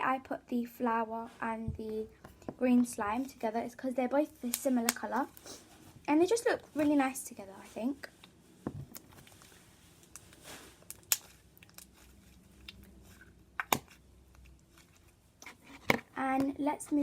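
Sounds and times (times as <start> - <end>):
faint slime crackle: 6.7 - 15.7
sticky slime clicks: 10.9 - 11.9, 13.6 - 13.9.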